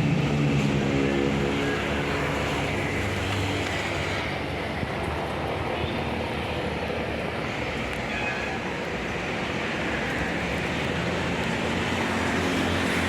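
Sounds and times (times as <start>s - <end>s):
bus engine running: 0.0s - 5.3s.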